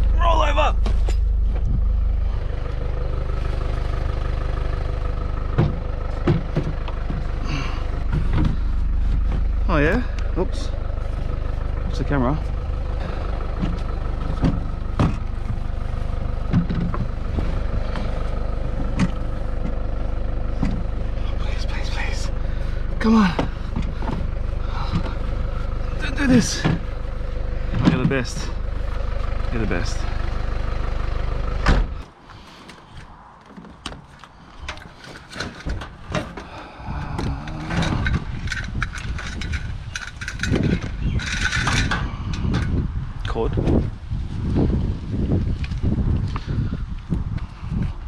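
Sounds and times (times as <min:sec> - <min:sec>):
vehicle engine running: 0:00.0 - 0:48.0.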